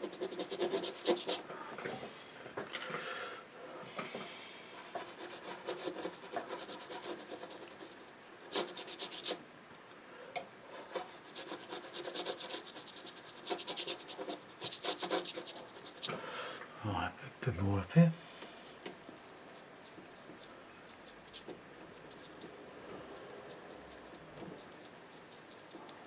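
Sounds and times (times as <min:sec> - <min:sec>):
paintbrush scratching on paper: 0:00.0 - 0:01.4, 0:04.9 - 0:09.4, 0:10.8 - 0:16.1, 0:19.2 - 0:25.9.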